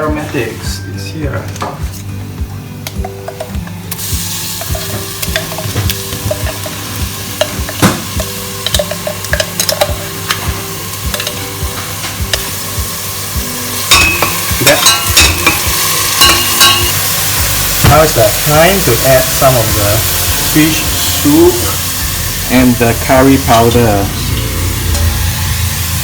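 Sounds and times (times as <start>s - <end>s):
utensil knocking against cookware: 2.9s - 3.8s, 4.6s - 6.8s, 7.4s - 12.4s
paste sizzling in hot oil: 3.7s - 26.0s.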